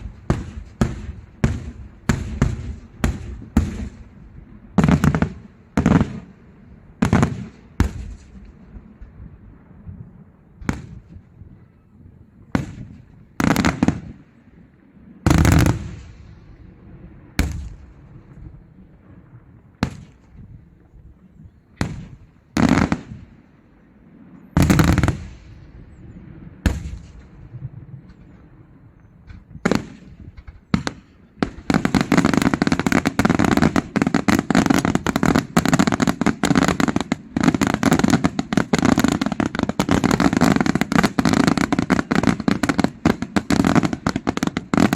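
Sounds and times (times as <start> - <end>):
firecrackers crackling rapidly: 0.0 - 4.2, 15.3 - 16.3, 24.6 - 25.5, 29.3 - 44.9
firework bangs: 0.0 - 9.1, 10.6 - 11.6, 12.5 - 14.3, 15.2 - 20.7, 21.8 - 23.5, 24.2 - 44.9.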